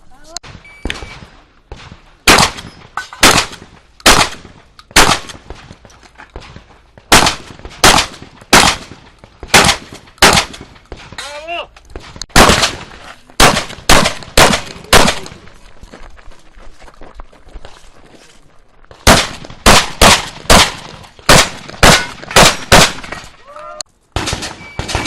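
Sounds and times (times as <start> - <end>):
shotgun shots: 0.4 - 5.7, 6.4 - 11.2, 12.0 - 15.5, 19.0 - 23.3, 24.2 - 25.0.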